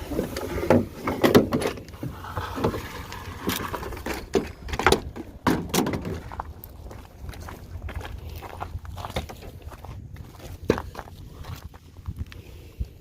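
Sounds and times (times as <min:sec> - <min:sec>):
knocks and clatters: 0:03.4 - 0:06.4.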